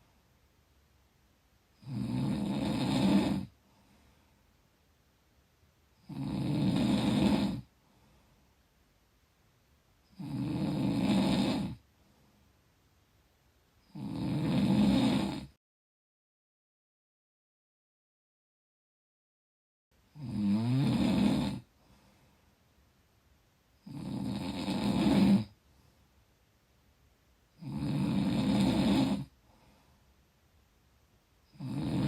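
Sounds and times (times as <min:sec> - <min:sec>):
person snoring: 0:01.8 - 0:03.6, 0:06.0 - 0:07.7, 0:10.1 - 0:11.8, 0:13.9 - 0:15.6, 0:20.1 - 0:21.7, 0:23.8 - 0:25.6, 0:27.6 - 0:29.4, 0:31.5 - 0:32.0.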